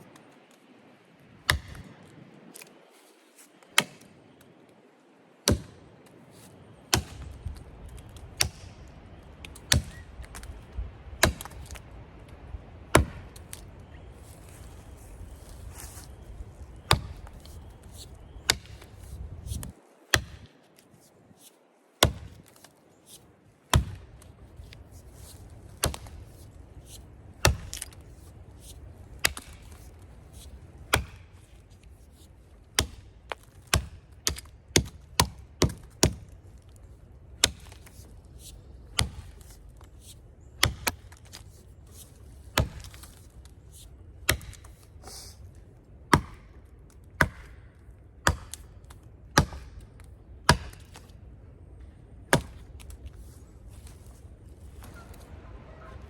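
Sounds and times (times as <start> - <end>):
hatchet chopping into tree: 1.4 - 1.9, 5.4 - 5.8, 6.9 - 7.3, 9.5 - 10.5, 11.2 - 11.8, 12.9 - 13.6, 16.8 - 17.5, 18.5 - 18.9, 19.6 - 20.5, 22.0 - 22.5, 23.7 - 24.1, 25.8 - 26.2, 27.4 - 28.0, 29.2 - 29.8, 30.9 - 31.4, 32.8 - 36.3, 37.4 - 37.9, 39.0 - 39.4, 40.6 - 41.4, 42.6 - 43.2, 44.2 - 44.8, 46.1 - 51.1, 52.3 - 53.0.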